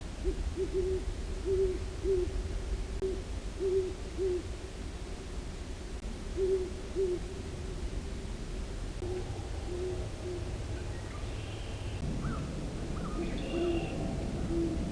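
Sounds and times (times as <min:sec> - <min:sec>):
steady low rumble: 0:00.0 - 0:14.9
owl hooting: 0:00.2 - 0:02.4, 0:03.0 - 0:04.5, 0:06.4 - 0:07.3, 0:09.0 - 0:14.8.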